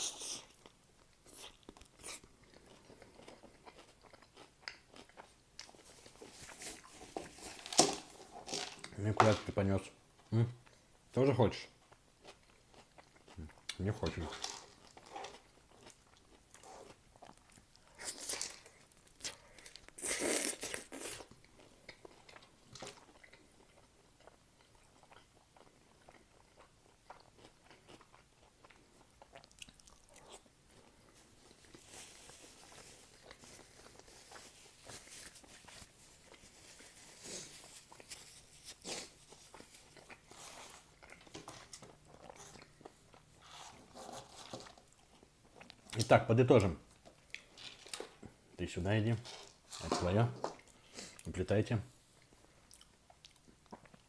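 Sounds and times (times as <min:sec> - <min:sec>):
chewing: 0:00.0 - 0:09.0, 0:11.7 - 0:46.1, 0:46.8 - 0:48.4, 0:49.2 - 0:51.3, 0:52.2 - 0:54.0
crunching vegetables: 0:24.8 - 0:46.1
biting into a wrap: 0:29.2 - 0:42.8.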